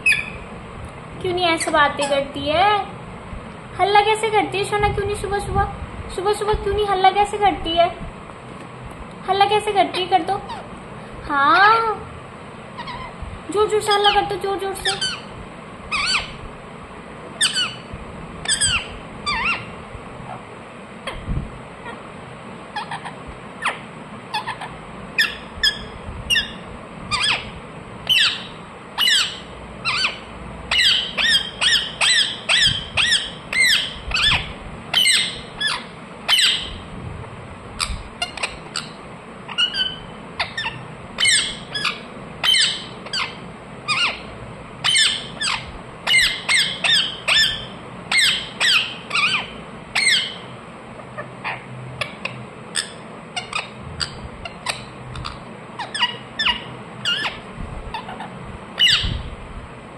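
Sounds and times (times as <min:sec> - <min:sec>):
parakeet screeching: 0:00.0 - 0:00.4, 0:12.8 - 0:13.2, 0:13.9 - 0:15.3, 0:15.9 - 0:16.4, 0:17.4 - 0:20.4, 0:22.7 - 0:36.8, 0:37.8 - 0:50.5, 0:51.2 - 0:59.2.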